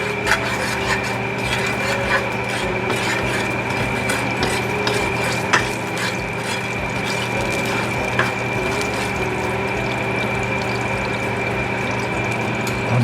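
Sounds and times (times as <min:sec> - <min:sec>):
utensil clicking against pan: 0:00.0 - 0:10.9
utensil scraping food in pan: 0:00.0 - 0:12.1.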